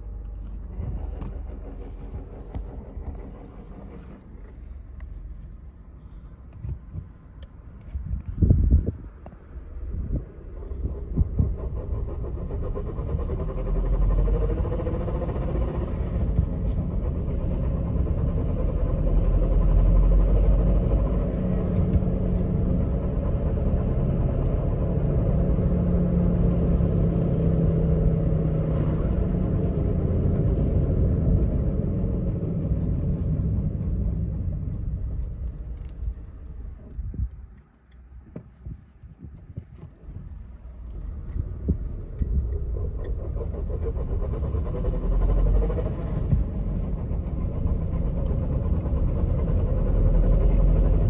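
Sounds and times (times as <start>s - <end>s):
car engine idling: 0.0s - 51.0s.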